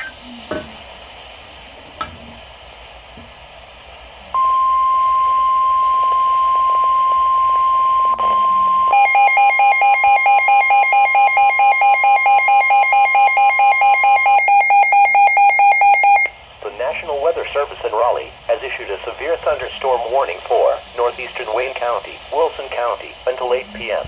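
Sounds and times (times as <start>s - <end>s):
rapid harsh beeping alarm: 4.4s - 16.4s.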